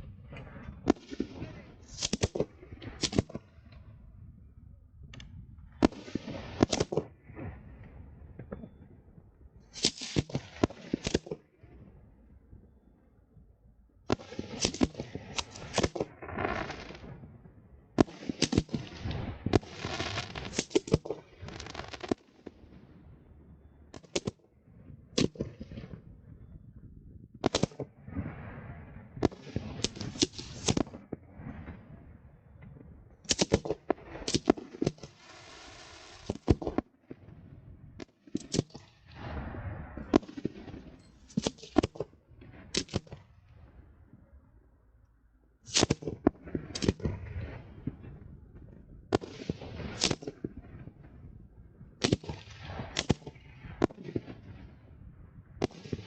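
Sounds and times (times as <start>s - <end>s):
firework crackle: 0.4s - 3.4s, 5.8s - 7.6s, 9.8s - 11.4s, 14.1s - 17.2s, 18.0s - 22.7s, 27.4s - 31.6s, 33.3s - 36.9s, 45.7s - 48.2s, 49.1s - 50.7s, 52.0s - 54.9s
firework shells bursting: 14.1s - 17.1s, 18.0s - 22.2s, 29.3s - 31.0s, 33.3s - 36.8s, 49.1s - 50.4s
firework hiss: 19.6s - 22.1s, 35.0s - 36.5s.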